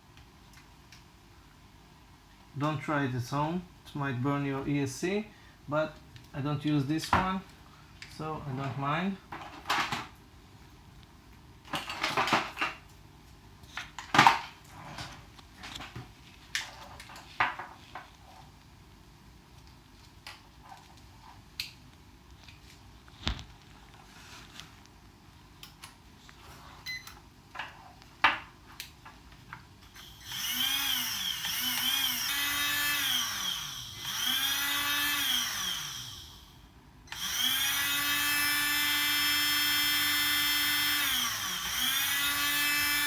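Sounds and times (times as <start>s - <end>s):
electric motor whining: 29.9s - 36.5s, 37.1s - 43.0s.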